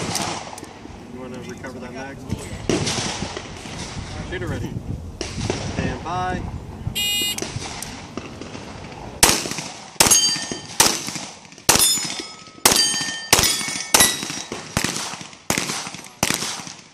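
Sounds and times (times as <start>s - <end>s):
pistol shots: 7.2s - 16.9s
steel target plate clanging: 10.0s - 10.8s, 11.7s - 14.6s.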